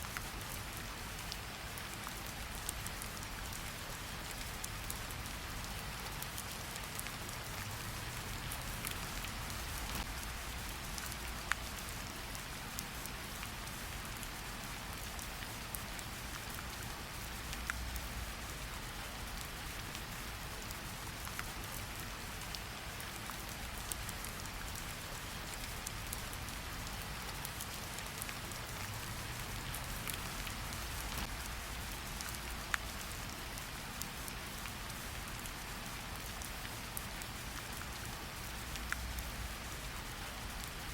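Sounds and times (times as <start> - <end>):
rain hiss: 0.0 - 40.9
wood fire crackling: 27.4 - 33.1.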